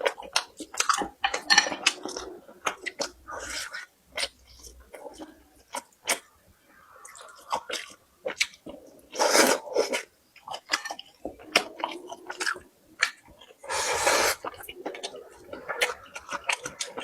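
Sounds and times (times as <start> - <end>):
person chewing food: 7.0 - 17.0.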